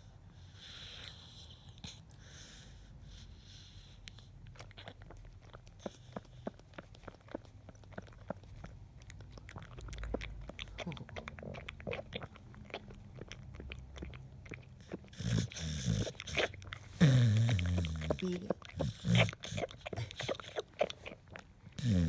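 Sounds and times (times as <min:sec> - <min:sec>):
dog breathing: 0:00.0 - 0:22.0
dog clicking mouth noises: 0:04.1 - 0:22.0
dog snoring: 0:14.9 - 0:20.6, 0:21.8 - 0:22.0.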